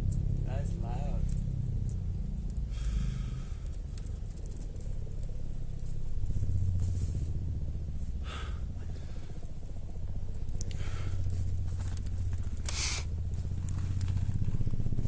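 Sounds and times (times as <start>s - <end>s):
low droning hum from the sky: 0.0s - 15.0s
short hissing noises: 12.7s - 13.1s.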